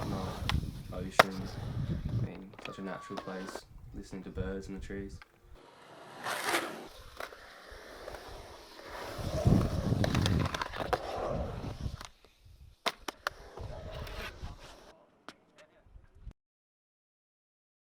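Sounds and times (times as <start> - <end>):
skateboard wheels rolling: 0.0 - 3.6, 5.2 - 15.0
skateboard clacks: 9.3 - 11.0.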